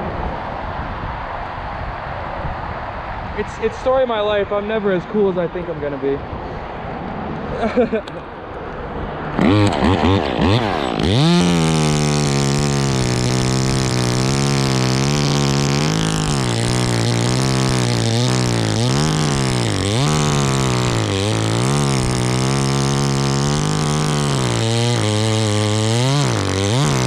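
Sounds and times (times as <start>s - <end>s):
chainsaw cutting wood: 9.3s - 27.0s.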